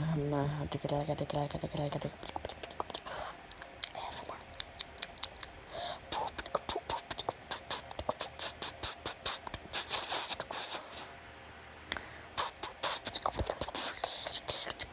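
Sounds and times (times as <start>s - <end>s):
person making clicks and pops: 2.4s - 5.5s.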